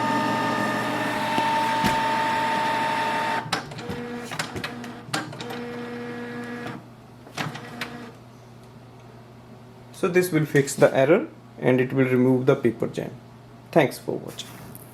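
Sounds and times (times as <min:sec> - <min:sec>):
printer motor whine: 0:00.0 - 0:06.8, 0:07.4 - 0:08.2.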